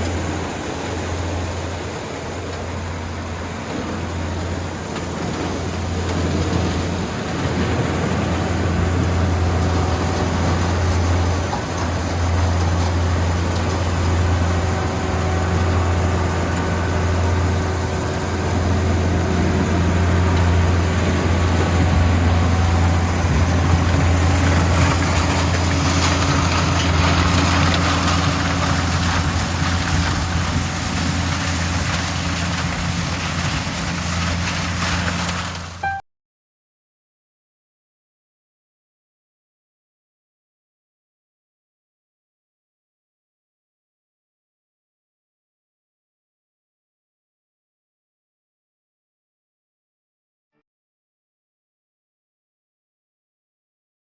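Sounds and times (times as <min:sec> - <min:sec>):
harvester engine droning: 0:00.0 - 0:36.0
machinery clatter: 0:03.3 - 0:35.8.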